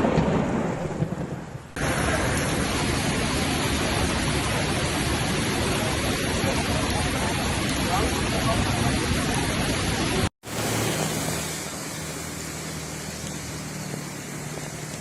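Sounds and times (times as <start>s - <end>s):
thunder rumble: 0.0s - 7.8s
heavy rain hissing: 1.5s - 15.0s.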